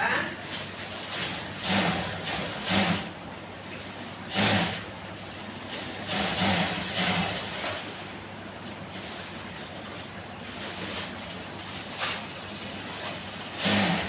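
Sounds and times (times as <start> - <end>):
electric sewing machine stitching: 0.3 - 3.2, 4.2 - 7.9, 13.4 - 14.0.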